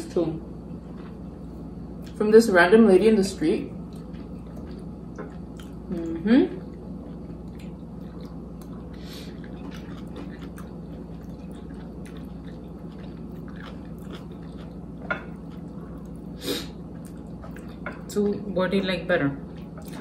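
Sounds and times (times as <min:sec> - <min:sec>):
low room hum: 0:00.0 - 0:20.0
person chewing: 0:03.8 - 0:18.1, 0:19.5 - 0:20.0.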